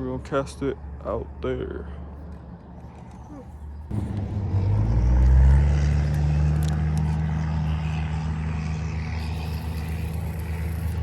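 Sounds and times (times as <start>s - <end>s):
passing motor engine drone: 3.9s - 11.0s.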